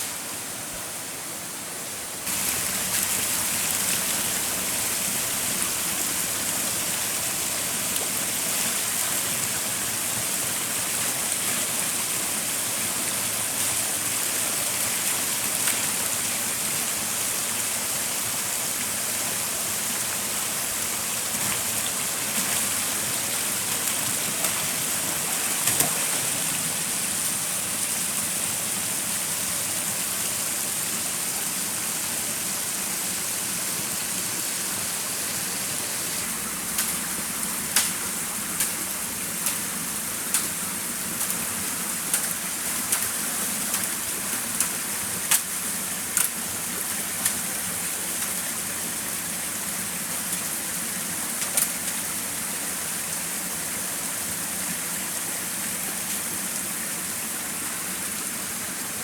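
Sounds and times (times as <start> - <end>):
stream water flowing: 0.0 - 59.0.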